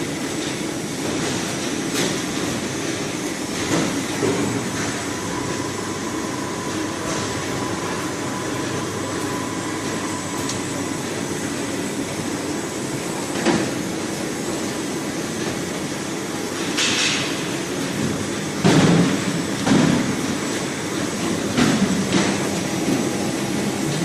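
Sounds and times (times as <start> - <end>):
machinery running: 1.0 - 16.8.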